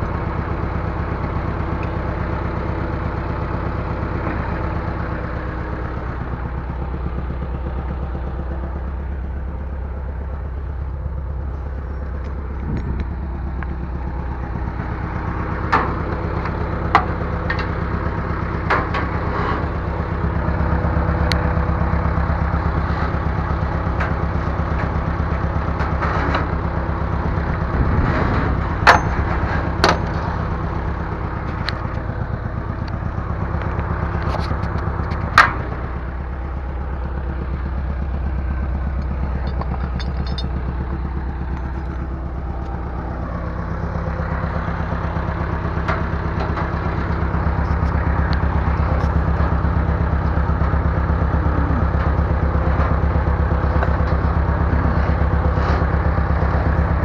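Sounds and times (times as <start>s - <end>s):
bulldozer diesel engine running: 0.0s - 57.0s
sharp metallic clanks: 28.7s - 30.5s, 39.0s - 42.7s.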